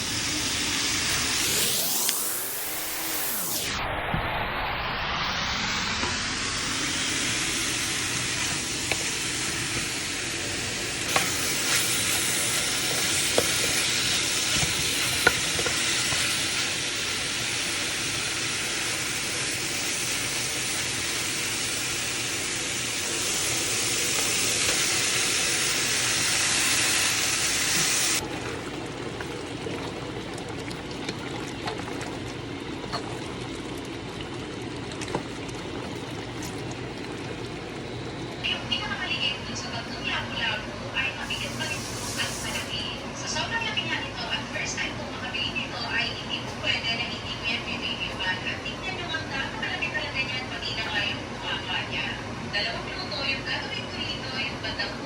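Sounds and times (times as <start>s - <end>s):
meat sizzling in a pan: 5.7s - 28.2s, 41.2s - 42.8s.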